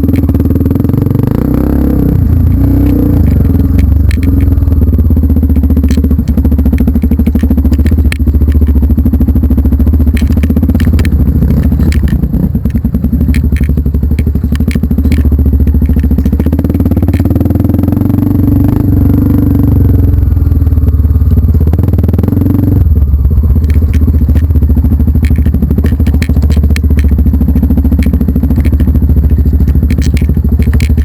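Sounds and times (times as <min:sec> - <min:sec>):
vehicle engine under load: 0:00.0 - 0:31.0
rattling and knocks: 0:02.0 - 0:18.9, 0:23.3 - 0:31.0.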